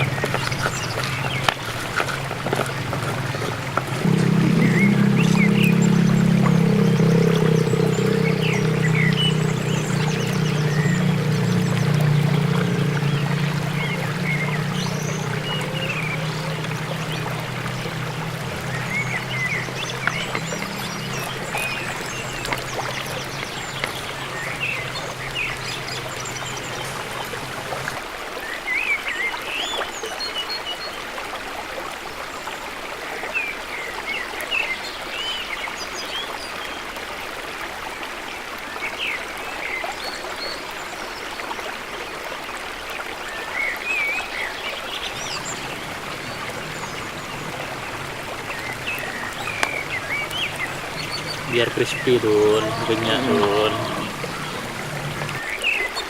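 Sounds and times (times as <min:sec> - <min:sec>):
birds chirping: 0:00.0 - 0:28.0, 0:43.4 - 0:56.0
low hum: 0:00.0 - 0:28.0, 0:45.1 - 0:55.4.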